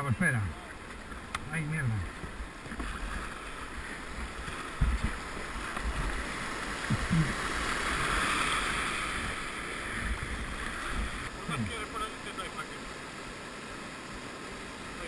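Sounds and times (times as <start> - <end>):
river rapids rushing: 0.0 - 15.0
wind thumps on microphone: 4.1 - 6.2.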